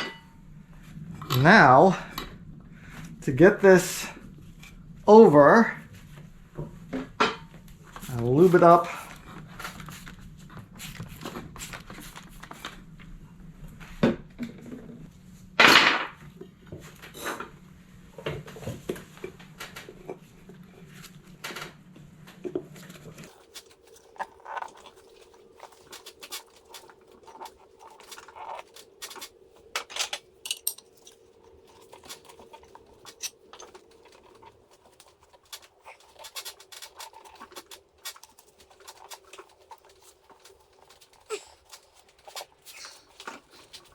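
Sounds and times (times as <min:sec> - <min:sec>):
background hum: 0:00.0 - 0:43.9.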